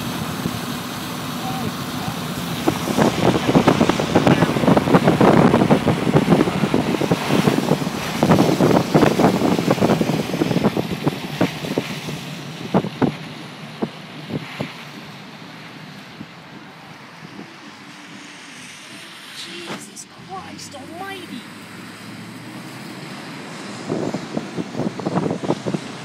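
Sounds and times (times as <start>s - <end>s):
rain hitting car roof and windows: 0.0s - 26.0s
storm wind: 0.0s - 26.0s.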